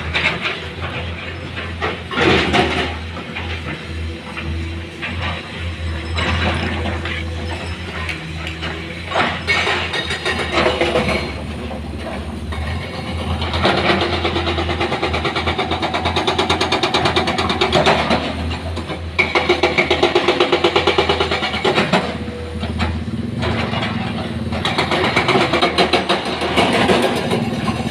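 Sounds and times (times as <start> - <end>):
diesel engine droning: 0.0 - 15.8, 21.0 - 27.9.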